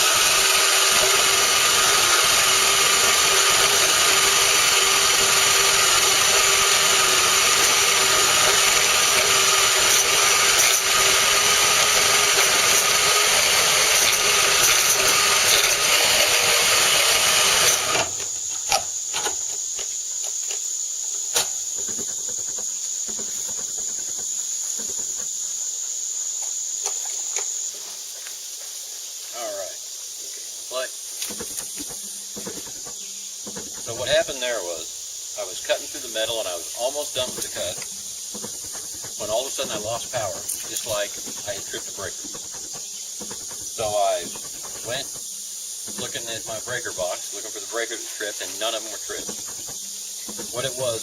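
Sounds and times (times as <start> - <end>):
band saw cutting metal: 0.0 - 19.4, 35.4 - 51.0.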